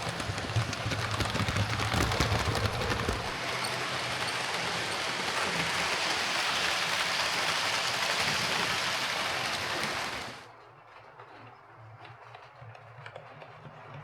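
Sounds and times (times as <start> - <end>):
model train running on track: 0.0 - 14.0.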